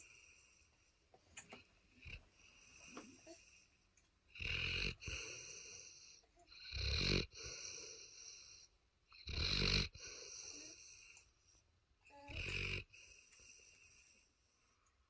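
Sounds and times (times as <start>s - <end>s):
dog snoring: 1.5s - 3.6s, 4.3s - 11.2s, 12.1s - 14.3s
dog breathing: 4.4s - 11.2s.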